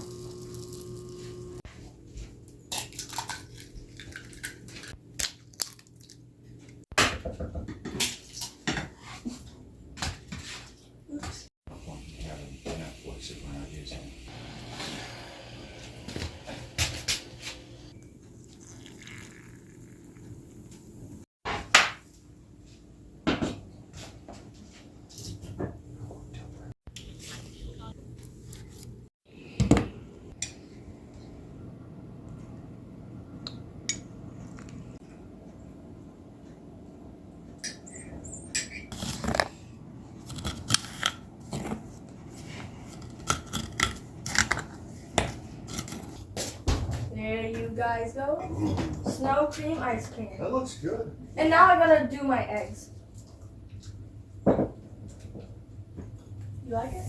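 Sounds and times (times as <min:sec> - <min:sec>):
kitchen utensils clicking and scraping: 0:40.2 - 0:46.2.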